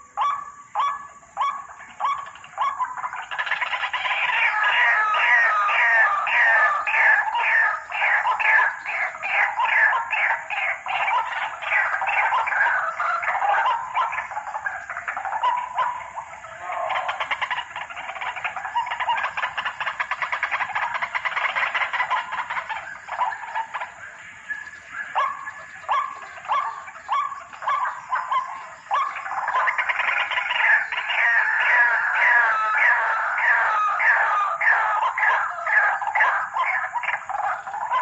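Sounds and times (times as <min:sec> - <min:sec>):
bird croaking calls: 0:00.0 - 0:38.0.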